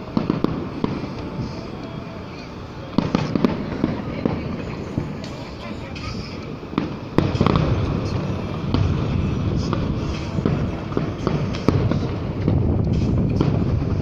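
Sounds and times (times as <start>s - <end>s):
continuous low rumble: 0.0s - 14.0s
fireworks bangs: 0.0s - 14.0s.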